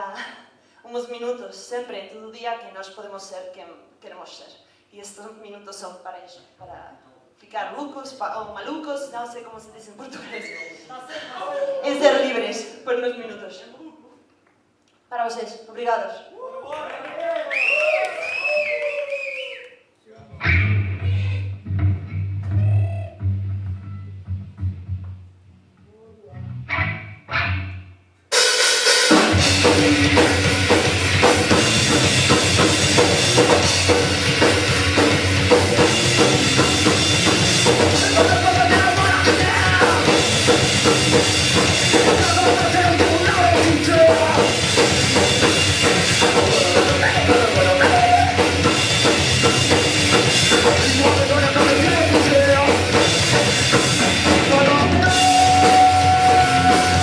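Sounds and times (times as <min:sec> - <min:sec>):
rock band playing live: 0:20.4 - 0:22.6, 0:26.6 - 0:57.0
pounding drum kit: 0:28.3 - 0:57.0.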